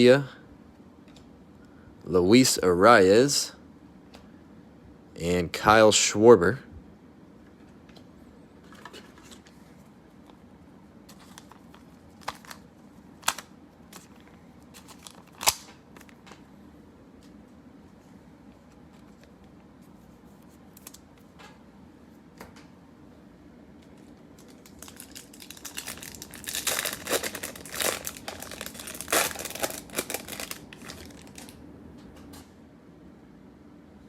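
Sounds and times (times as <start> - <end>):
card pack wrapper crinkling and tearing: 11.1 - 16.2, 24.4 - 31.6.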